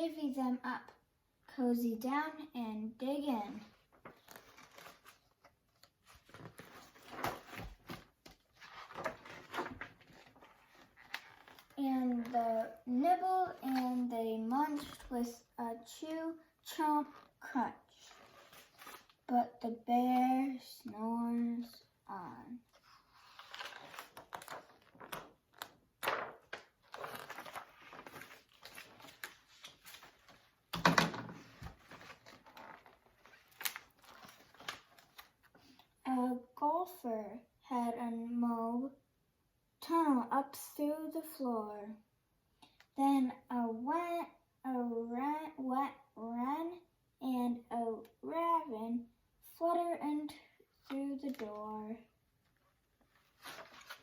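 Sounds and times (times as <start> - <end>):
book pages rustling: 3.5 - 15.2, 18.1 - 19.3, 22.6 - 35.9, 51.2 - 51.5, 52.4 - 54.0.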